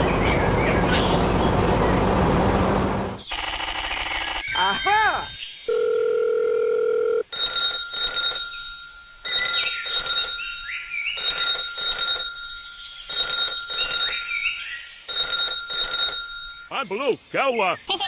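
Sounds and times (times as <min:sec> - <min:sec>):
telephone double ringing: 0:03.3 - 0:16.7.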